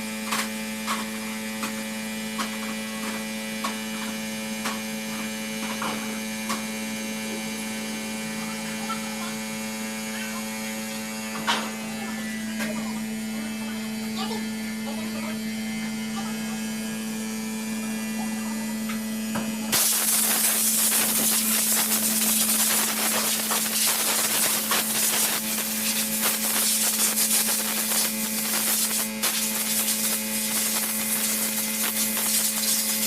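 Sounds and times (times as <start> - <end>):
electrical hum: 0.0 - 33.0
loud rushing hiss: 19.7 - 32.7.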